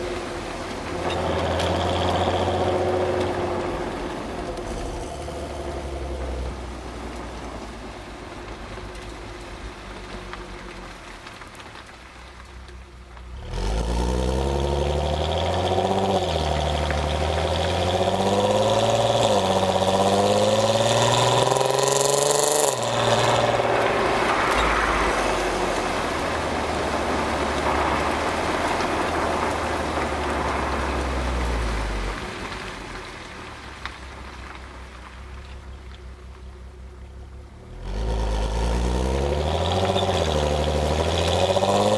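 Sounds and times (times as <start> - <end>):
car exhaust revving: 0.0 - 8.0, 13.2 - 32.6, 37.1 - 41.9
low exhaust rumble: 0.0 - 11.5.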